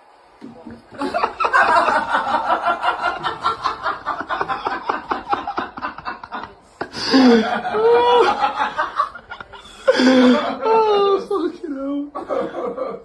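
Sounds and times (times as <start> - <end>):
person laughing hard: 1.0 - 11.2.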